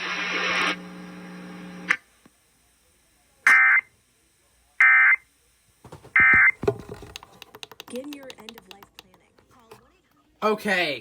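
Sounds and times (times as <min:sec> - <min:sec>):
electronic hum: 0:05.9 - 0:07.5.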